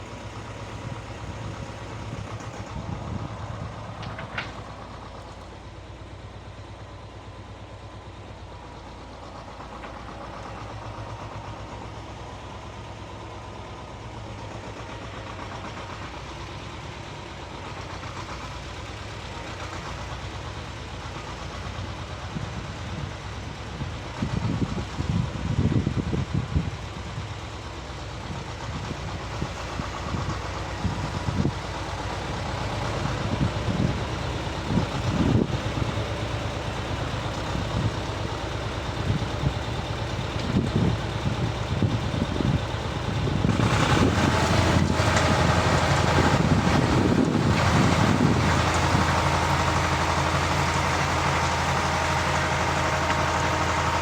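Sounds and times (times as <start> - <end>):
motor tiller engine running: 29.5 - 54.0.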